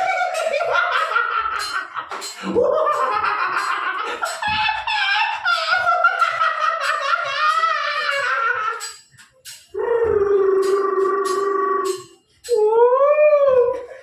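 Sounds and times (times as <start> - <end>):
person making silly high noise: 9.8 - 13.9.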